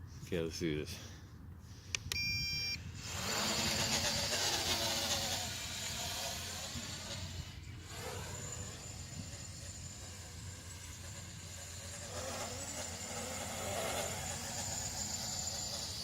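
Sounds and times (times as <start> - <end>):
drone propellers whirring: 2.0 - 16.0
short electronic beep: 2.1 - 2.8.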